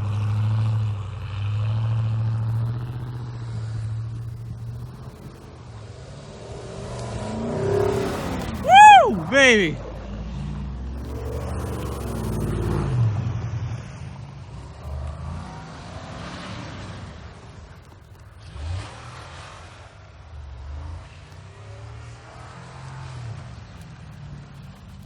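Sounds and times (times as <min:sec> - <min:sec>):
truck engine revving: 0:00.0 - 0:09.8.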